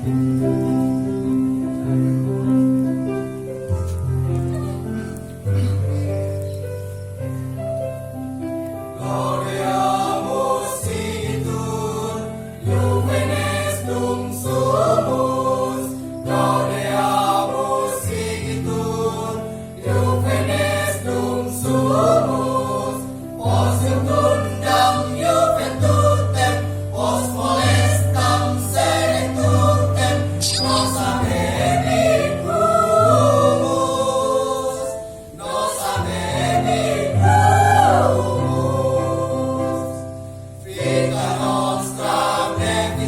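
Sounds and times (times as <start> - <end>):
choir singing in parts: 8.9 - 43.0.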